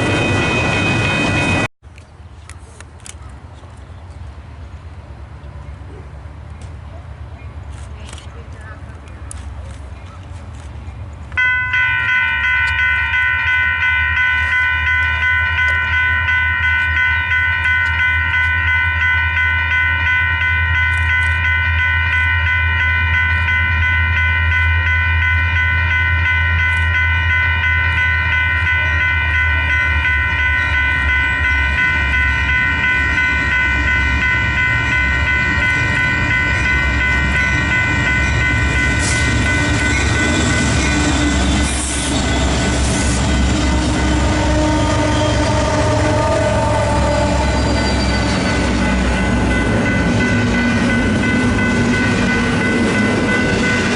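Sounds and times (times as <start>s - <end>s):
locomotive air horn chord: 40.8s - 49.0s.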